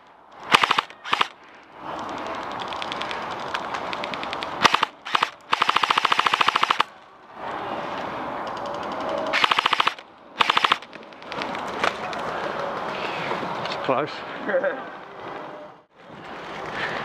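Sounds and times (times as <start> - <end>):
airsoft guns firing full-auto bursts: 0.5 - 1.3, 4.6 - 6.9, 9.4 - 10.8.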